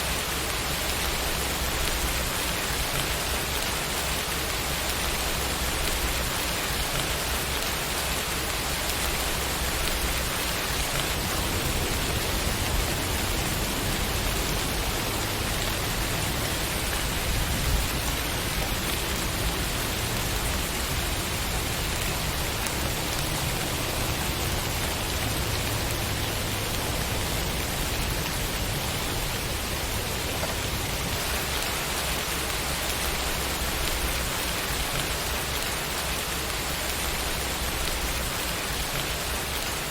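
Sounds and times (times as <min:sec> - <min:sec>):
steady rainfall: 0:00.0 - 0:39.9.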